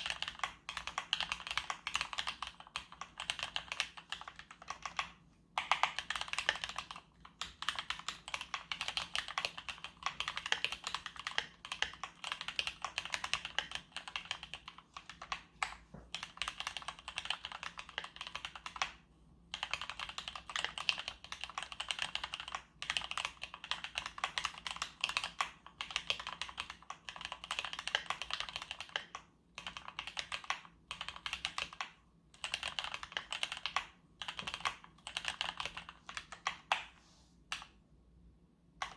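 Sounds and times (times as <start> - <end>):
mechanical keyboard typing: 0.0 - 37.8.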